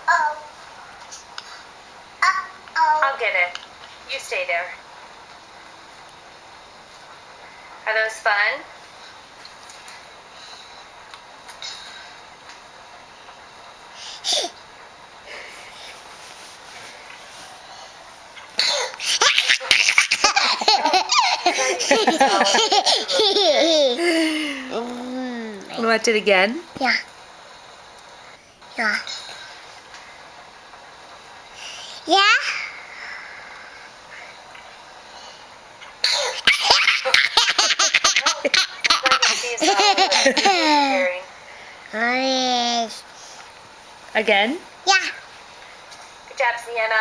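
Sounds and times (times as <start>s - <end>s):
young child laughing: 19.0s - 25.5s, 36.2s - 41.0s.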